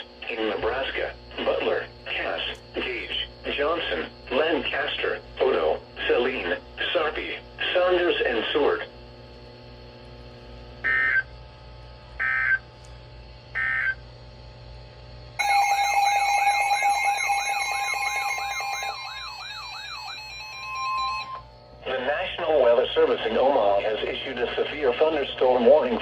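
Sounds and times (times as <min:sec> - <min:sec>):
warbling electronic alarm: 0:10.8 - 0:11.3, 0:12.2 - 0:12.6, 0:13.5 - 0:14.0, 0:15.4 - 0:22.4
squawking data bursts: 0:13.6 - 0:14.0, 0:16.4 - 0:21.5
steady alert tone: 0:15.4 - 0:21.5
steady beeping tones: 0:15.4 - 0:21.5.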